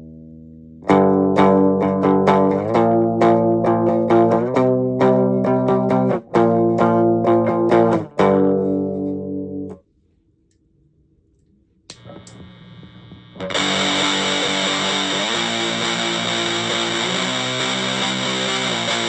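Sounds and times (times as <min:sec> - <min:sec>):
clean electric guitar chords: 0:00.0 - 0:09.8, 0:11.9 - 0:19.0
faint amplifier hum: 0:00.0 - 0:19.0
clicks: 0:11.3 - 0:14.2
heavily fuzzed electric guitar: 0:11.9 - 0:19.0.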